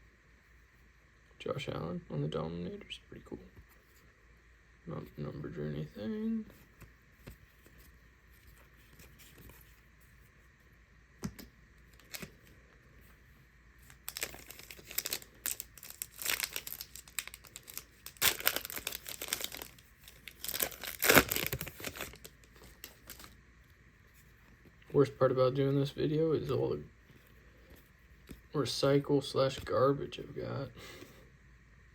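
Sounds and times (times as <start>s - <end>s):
packaging crinkling and tearing: 11.3s - 12.6s, 13.8s - 23.4s.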